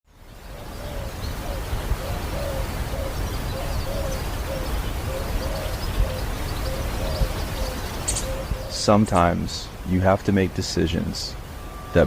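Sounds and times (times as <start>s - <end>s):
background hiss: 0.1s - 12.0s
bird hooting calls: 0.5s - 9.4s.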